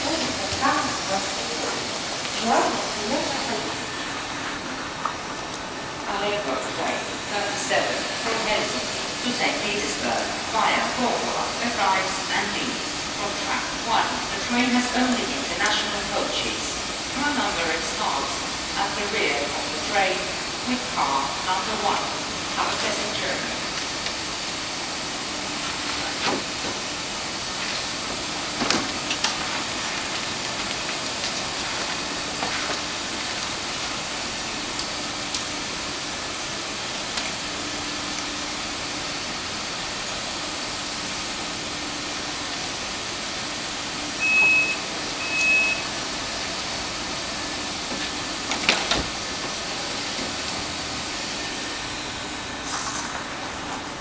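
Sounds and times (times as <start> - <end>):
electric train hissing: 0.0 - 54.0
short high beeps: 44.2 - 45.9.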